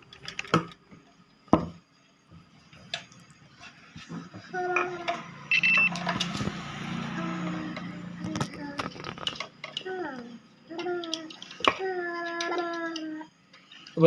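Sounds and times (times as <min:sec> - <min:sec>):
multimeter continuity beep: 0:05.4 - 0:06.2.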